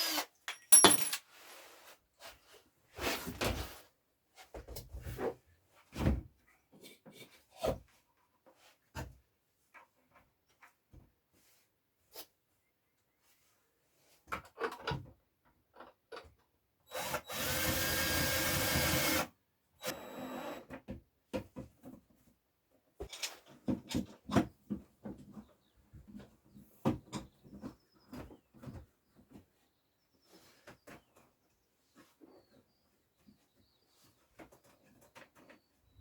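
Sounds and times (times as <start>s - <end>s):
power drill running: 0.0s - 0.3s, 16.9s - 20.6s.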